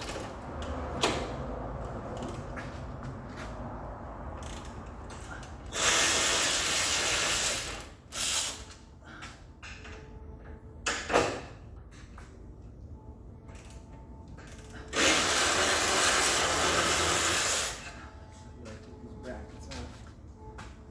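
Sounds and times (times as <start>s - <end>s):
ratchet wrench ratcheting: 4.4s - 8.7s.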